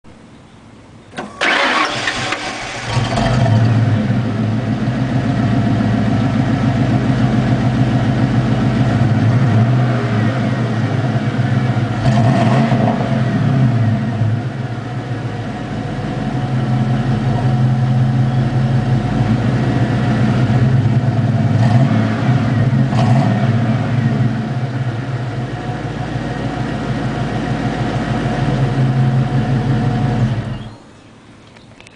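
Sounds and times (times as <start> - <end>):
engine cranking and starting: 1.1 - 3.8
engine idling and revving: 1.4 - 30.8.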